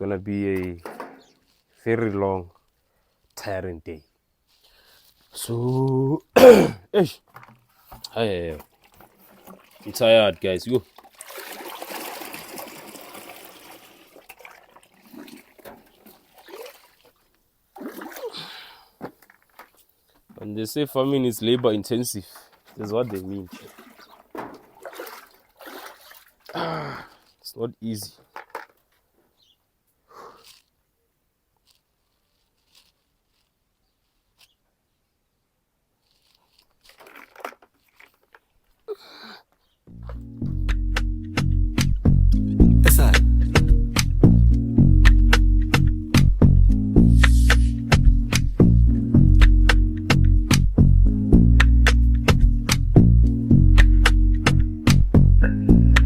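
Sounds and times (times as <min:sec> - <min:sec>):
rustling and scraping: 0:00.5 - 0:03.4, 0:04.4 - 0:05.9, 0:19.0 - 0:26.5, 0:28.0 - 0:29.4, 0:30.4 - 0:30.8, 0:31.6 - 0:34.6, 0:36.0 - 0:38.9
water trickling and splashing: 0:07.3 - 0:19.8, 0:21.0 - 0:28.7, 0:36.0 - 0:38.8
water rushing out of a pipe: 0:08.6 - 0:17.2, 0:22.8 - 0:26.6.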